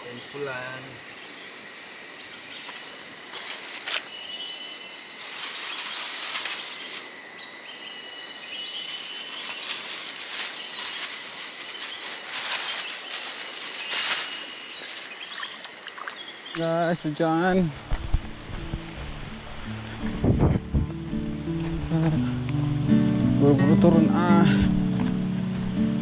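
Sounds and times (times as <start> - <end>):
insect drone: 0.0 - 26.0
rustling: 5.2 - 7.1, 8.8 - 15.8.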